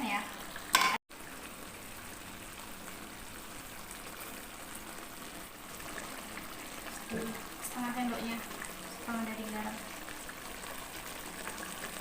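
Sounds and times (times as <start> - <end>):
broth bubbling in a pan: 0.0 - 12.0.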